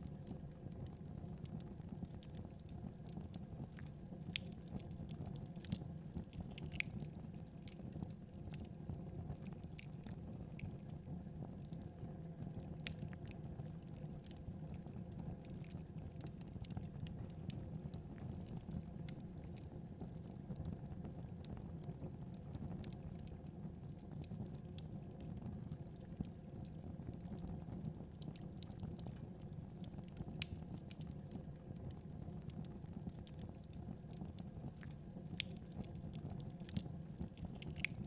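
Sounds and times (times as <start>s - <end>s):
wood fire crackling: 0.0s - 38.0s.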